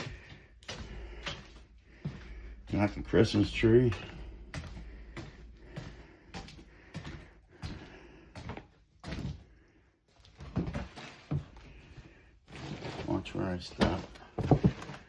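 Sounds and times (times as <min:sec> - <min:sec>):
knocks and thumps: 0:13.8 - 0:15.0.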